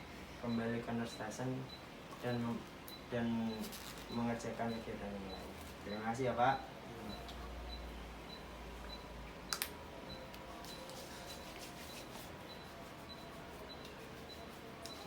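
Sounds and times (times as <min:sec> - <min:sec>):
faint regular ticking: 0:00.5 - 0:10.4.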